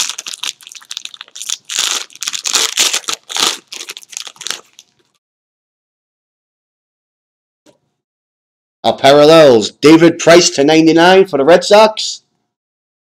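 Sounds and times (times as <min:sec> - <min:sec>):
wrapper crinkling and tearing: 0:00.0 - 0:05.2.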